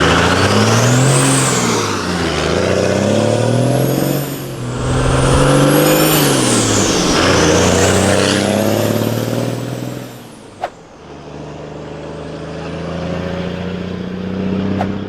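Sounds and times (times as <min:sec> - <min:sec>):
truck engine revving: 0:02.4 - 0:09.7.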